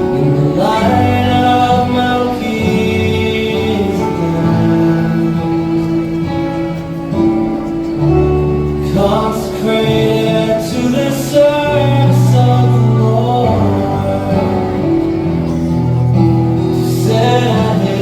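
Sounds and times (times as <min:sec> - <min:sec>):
instrumental chords: 0:00.0 - 0:18.0
person singing: 0:00.0 - 0:18.0.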